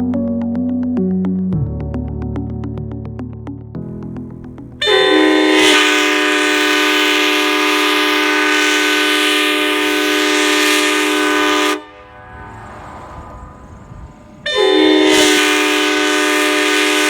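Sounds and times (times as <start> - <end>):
locomotive air horn chord: 4.8 - 17.0.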